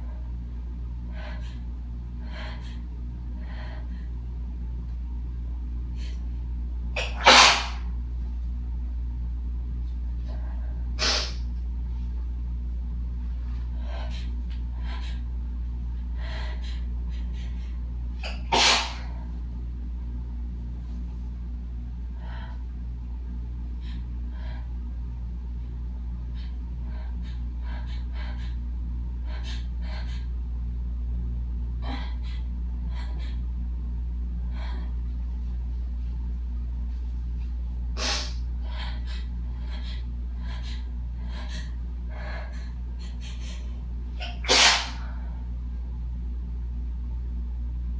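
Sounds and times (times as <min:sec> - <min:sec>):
low hum: 0:00.0 - 0:47.9
woman sneezing: 0:07.0 - 0:07.8, 0:18.2 - 0:19.1, 0:44.2 - 0:45.0
gasping breaths and sniffs: 0:38.0 - 0:45.4.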